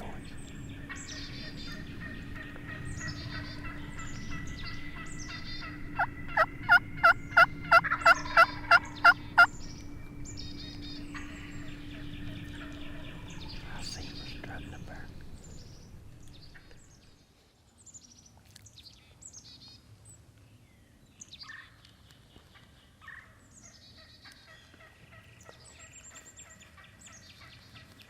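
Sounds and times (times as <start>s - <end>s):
steady low hum: 0.0s - 17.3s
songbird singing: 0.0s - 28.0s
turkey yelps: 1.7s - 9.5s.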